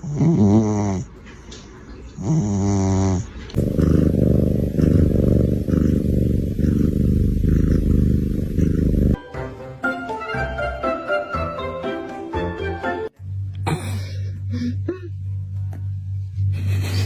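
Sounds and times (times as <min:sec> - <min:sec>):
cat snoring: 0:00.0 - 0:01.1, 0:02.2 - 0:09.2.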